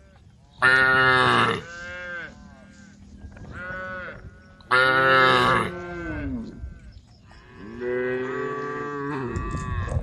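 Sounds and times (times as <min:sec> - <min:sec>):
cattle mooing: 0:00.6 - 0:02.6, 0:03.6 - 0:06.6, 0:07.4 - 0:10.0.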